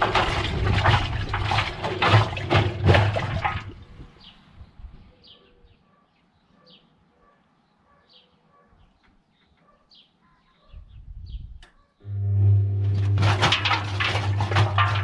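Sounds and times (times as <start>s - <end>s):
washing machine loud low hum: 0.0s - 3.8s, 12.0s - 15.0s.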